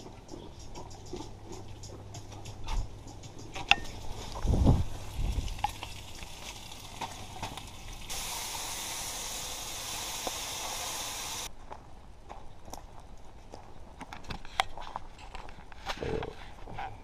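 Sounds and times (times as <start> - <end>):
campfire crackling and popping: 3.6 - 9.1
steady hiss: 7.6 - 11.5.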